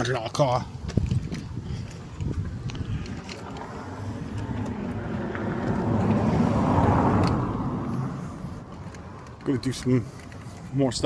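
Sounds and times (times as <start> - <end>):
vehicle passing by: 2.9 - 10.8.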